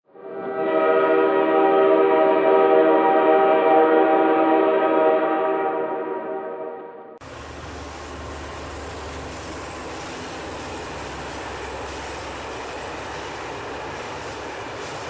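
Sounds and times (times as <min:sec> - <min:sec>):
train horn blast: 0:00.1 - 0:07.3.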